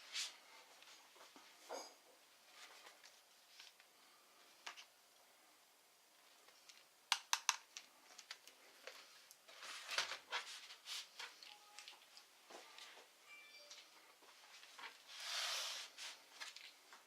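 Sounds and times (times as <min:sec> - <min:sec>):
small parts clicking and tapping: 0:06.6 - 0:09.4.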